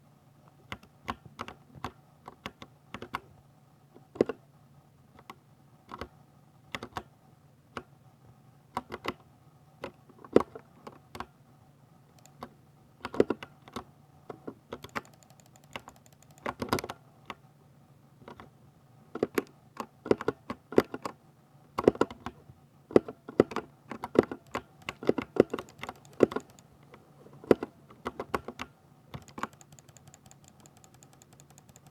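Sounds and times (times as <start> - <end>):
mechanical keyboard typing: 12.1 - 13.9, 14.7 - 17.0, 23.0 - 31.9.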